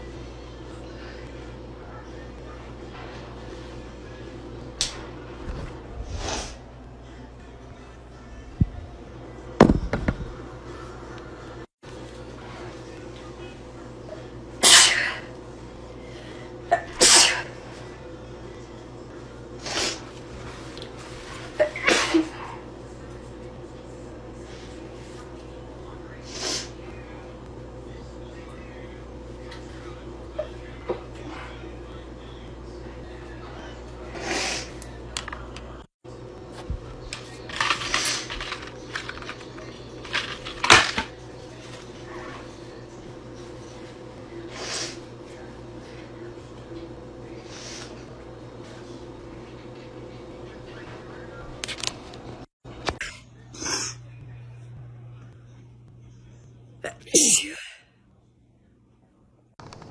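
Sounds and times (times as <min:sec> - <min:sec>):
woman sneezing: 0:14.6 - 0:15.3, 0:16.7 - 0:17.5, 0:21.6 - 0:22.3, 0:53.6 - 0:54.0, 0:56.9 - 0:57.8.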